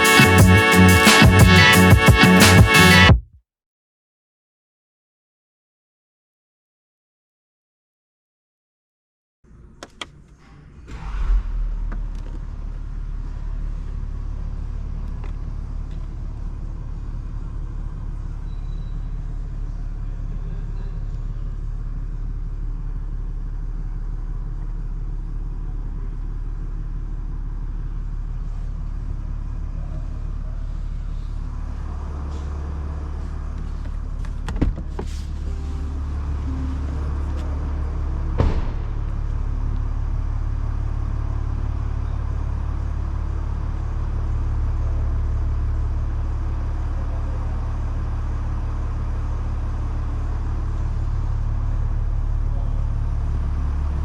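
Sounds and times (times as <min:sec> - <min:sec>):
car engine rumbling: 0:09.5 - 0:54.0.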